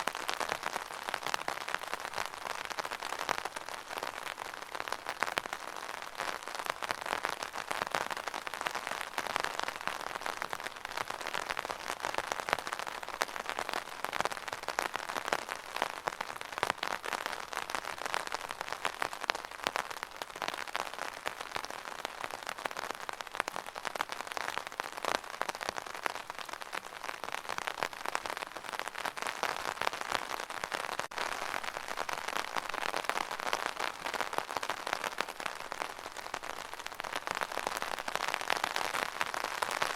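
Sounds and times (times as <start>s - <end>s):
rain drumming on an umbrella: 0.0s - 39.9s.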